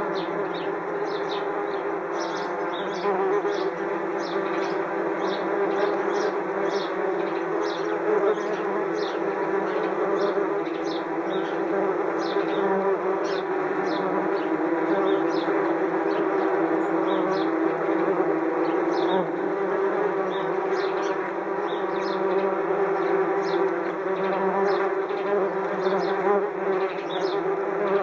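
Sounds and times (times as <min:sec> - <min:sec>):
sparrows chirping: 0:00.0 - 0:27.5
wasps buzzing: 0:00.0 - 0:28.0.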